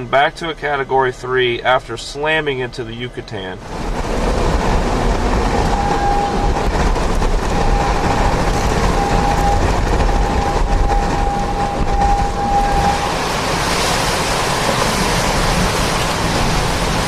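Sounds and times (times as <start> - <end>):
strong wind rushing: 3.6 - 17.0
high wind whistle: 3.7 - 16.6.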